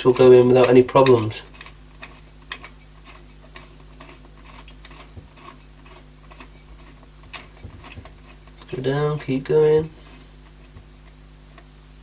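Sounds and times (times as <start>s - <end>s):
faint low hum: 0.0s - 12.0s.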